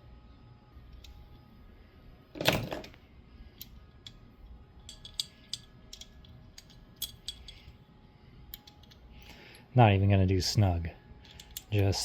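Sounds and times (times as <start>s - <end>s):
light metal clicks of bolts: 4.8s - 7.8s, 8.5s - 9.4s, 11.2s - 12.0s.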